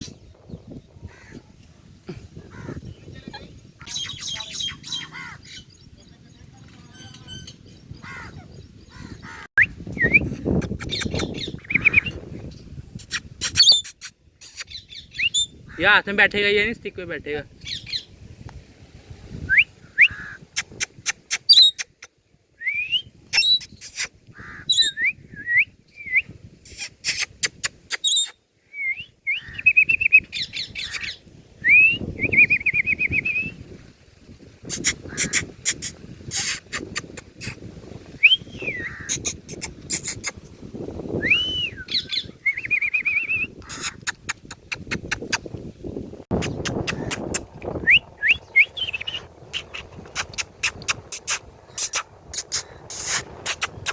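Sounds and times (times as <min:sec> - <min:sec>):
parrot whistling and chirping: 0:13.0 - 0:15.5, 0:20.8 - 0:22.0, 0:22.6 - 0:24.1, 0:24.7 - 0:33.5, 0:38.2 - 0:40.3, 0:41.2 - 0:45.0, 0:46.4 - 0:53.9
parrot clicks: 0:46.4 - 0:47.5.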